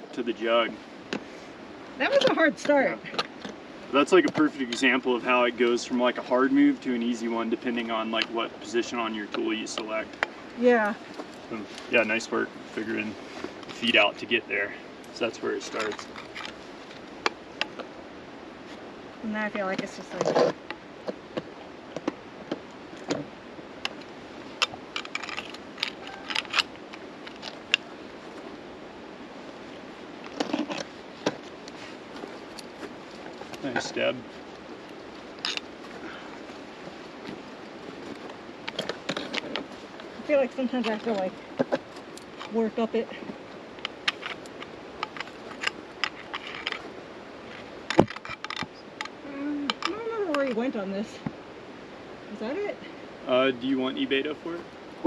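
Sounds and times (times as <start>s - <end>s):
metal picks clicking on rock: 43.8s - 46.8s.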